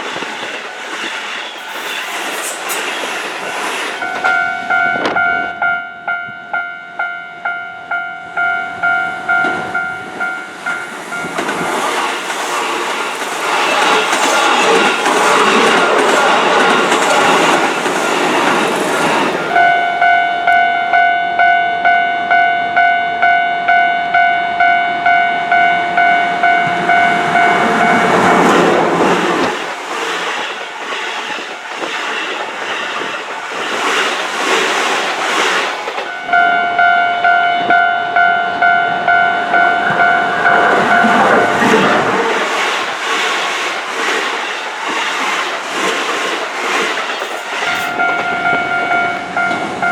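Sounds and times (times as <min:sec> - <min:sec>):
electric trains clattering wheels: 0:00.0 - 0:05.8, 0:07.9 - 0:20.7, 0:25.9 - 0:49.9
level crossing warning bell: 0:04.0 - 0:12.0, 0:19.5 - 0:28.9, 0:35.9 - 0:42.1, 0:47.6 - 0:49.9.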